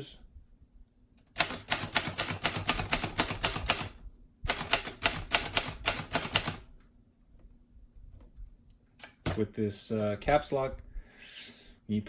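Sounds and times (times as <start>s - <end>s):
manual typewriter typing: 1.3s - 6.7s.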